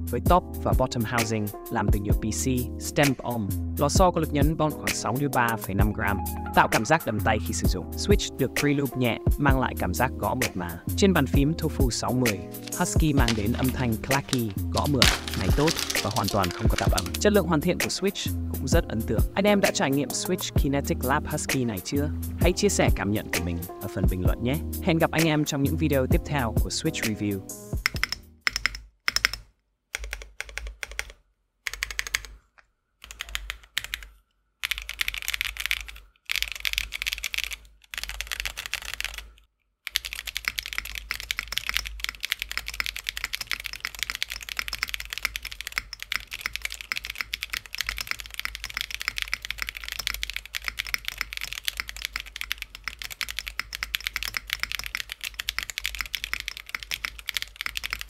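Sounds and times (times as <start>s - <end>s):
clacky keyboard typing: 12.1s - 18.1s, 27.8s - 32.4s, 33.0s - 39.3s, 39.9s - 58.0s.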